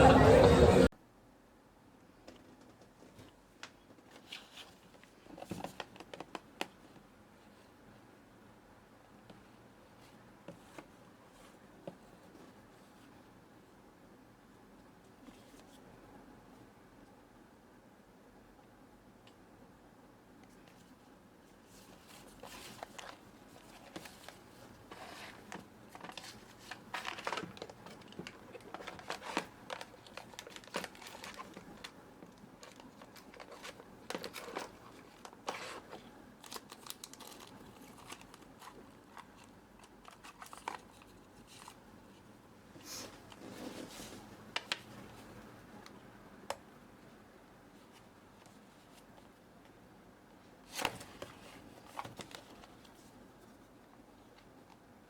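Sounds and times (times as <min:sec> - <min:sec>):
packaging rustles and clicks: 0:22.4 - 0:41.8
plastic wrap crinkling and tearing: 0:25.9 - 0:32.0, 0:32.6 - 0:41.0.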